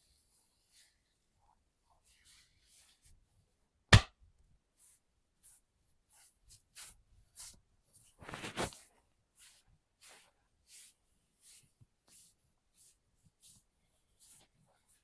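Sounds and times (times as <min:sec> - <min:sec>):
hands brushing skin and hair: 0:00.0 - 0:03.2, 0:04.6 - 0:15.0
crackling rub: 0:08.1 - 0:08.9.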